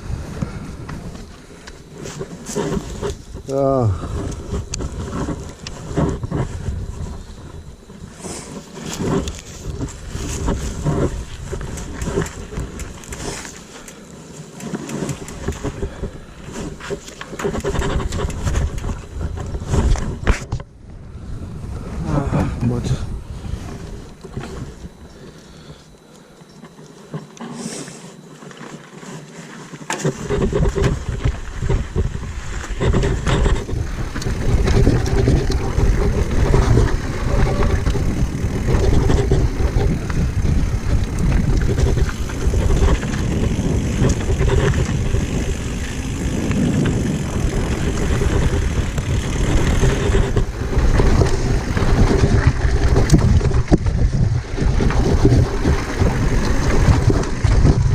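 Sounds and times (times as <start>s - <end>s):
wind rushing over microphone: 0.0s - 13.6s, 14.9s - 25.3s, 30.0s - 57.9s
mountain bike rumbling on trail: 0.0s - 57.9s.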